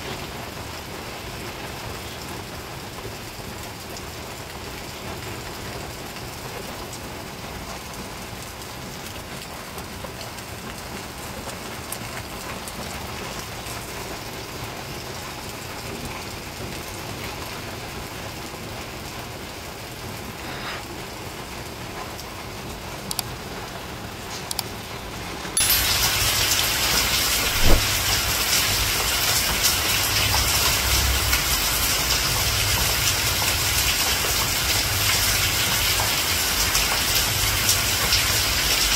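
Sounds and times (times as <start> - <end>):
steady rain falling: 0.0 - 38.9
sharp knock: 27.5 - 27.8.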